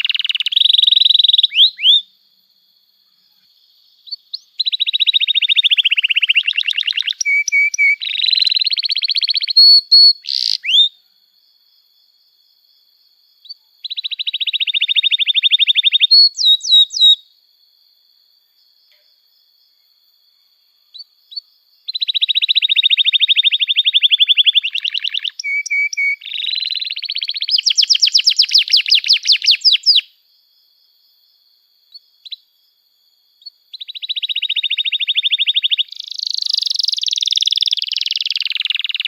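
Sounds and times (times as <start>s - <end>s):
canary singing trills and chirps: 0.0s - 2.0s, 4.0s - 10.9s, 13.4s - 17.2s, 21.0s - 30.1s, 33.4s - 39.0s.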